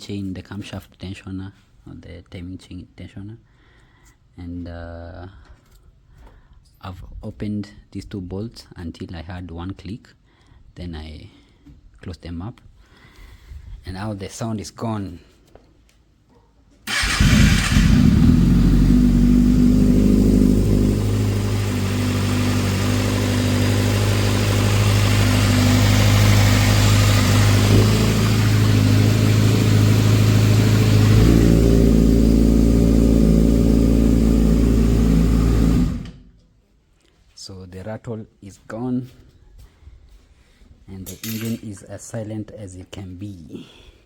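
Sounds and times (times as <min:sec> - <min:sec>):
motorcycle engine running: 0:16.9 - 0:36.2.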